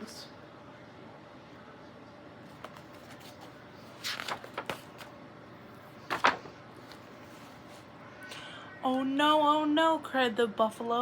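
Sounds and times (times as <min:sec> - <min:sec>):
paper page turning: 0:02.6 - 0:05.1, 0:06.1 - 0:07.6.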